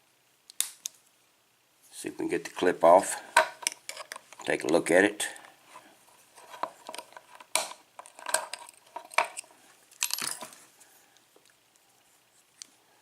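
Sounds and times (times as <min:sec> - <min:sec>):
small metal clicks and clinks: 0:08.0 - 0:10.6.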